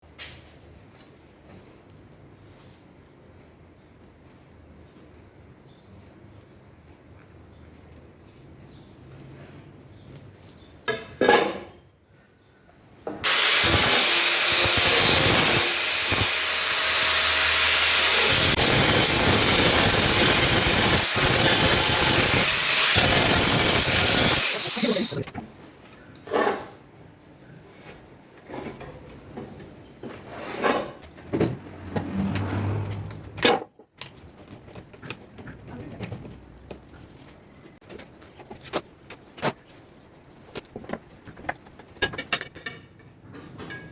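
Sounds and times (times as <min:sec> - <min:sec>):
power tool grinding metal: 0:13.2 - 0:25.3
handling knocks and scrapes: 0:27.6 - 0:43.9.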